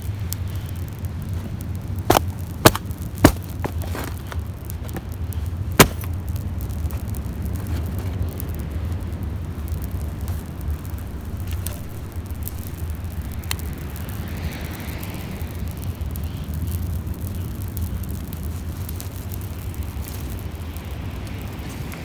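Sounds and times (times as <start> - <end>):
sharp crackles: 0.0 - 22.0
surf breaking: 2.1 - 6.3.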